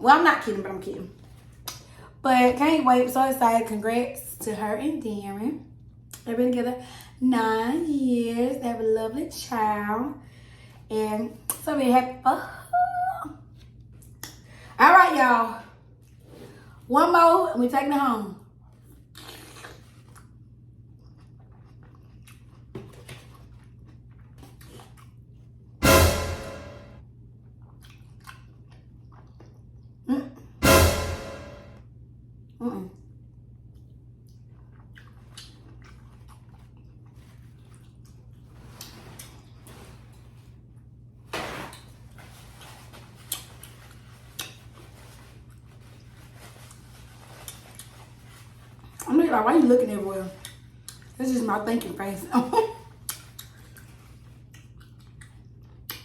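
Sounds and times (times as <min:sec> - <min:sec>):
sudden loud burst of noise: 0:25.8 - 0:27.0, 0:30.6 - 0:31.8
mouth clicks and smacks chewing: 0:27.7 - 0:30.0, 0:33.8 - 0:38.2, 0:53.0 - 0:56.0.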